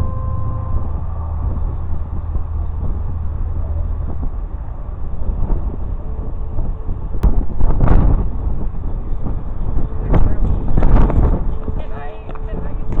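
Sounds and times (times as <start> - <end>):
faint steady tone: 0.0 - 5.0
wind buffeting microphone: 0.0 - 13.0.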